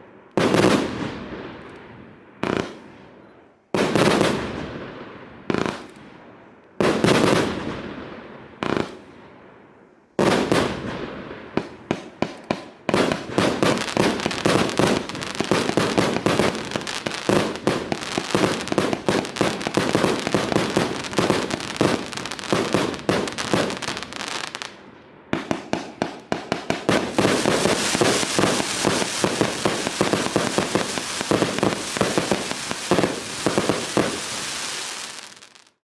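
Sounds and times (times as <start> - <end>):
hissing under fireworks bangs: 11.6 - 35.8
fireworks cake firing: 13.0 - 24.8, 25.4 - 35.8.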